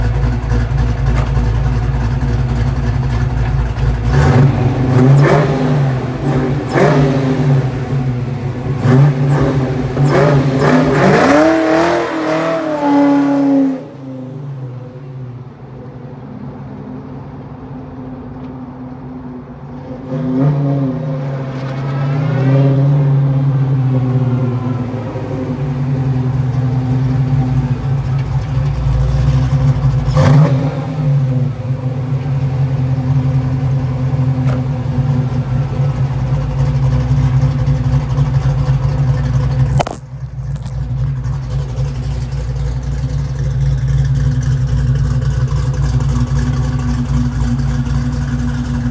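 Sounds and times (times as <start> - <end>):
car engine running: 0.0 - 12.8, 23.7 - 48.9
sharp crack: 38.4 - 45.1.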